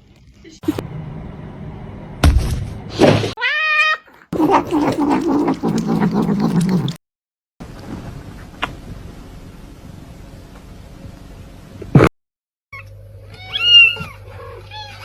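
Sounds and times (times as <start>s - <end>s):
cat meowing: 3.4s - 4.0s, 13.3s - 15.0s.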